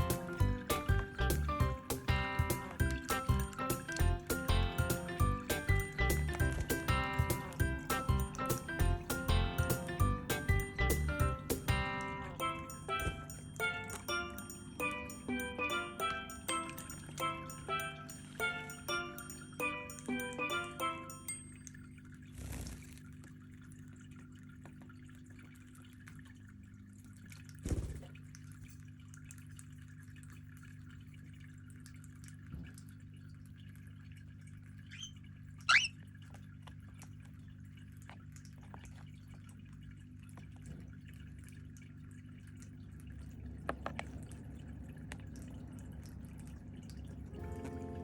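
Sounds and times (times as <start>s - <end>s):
faint water splashing: 0.0s - 48.0s
bird chirp: 34.9s - 36.0s.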